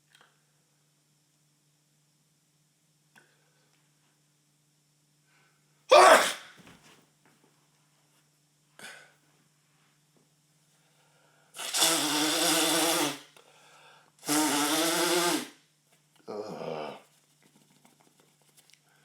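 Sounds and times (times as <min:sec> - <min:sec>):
man crying out while sneezing: 0:05.9 - 0:06.5.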